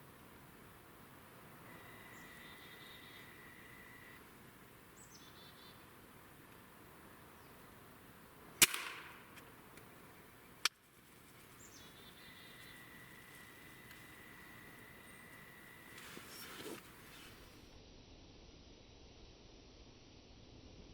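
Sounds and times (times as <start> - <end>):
faint birds chirping: 0.0 - 8.3, 9.4 - 17.8
air rifle firing: 8.6 - 9.5
sharp click: 8.6 - 9.9.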